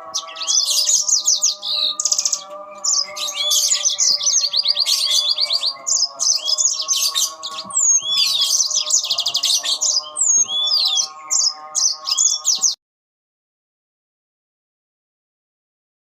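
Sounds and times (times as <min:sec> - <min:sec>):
canaries singing trills and whistles: 0:00.0 - 0:12.8.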